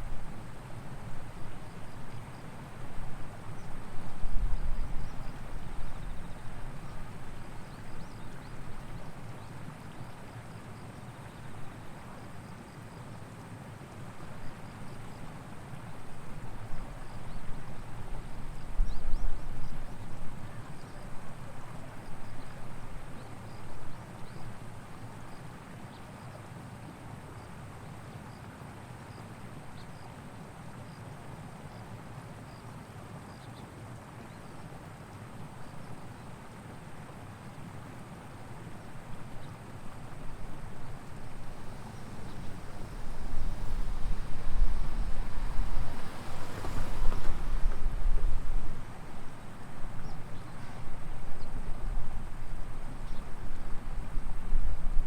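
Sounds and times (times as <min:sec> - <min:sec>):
wind buffeting microphone: 0:40.4 - 0:50.3.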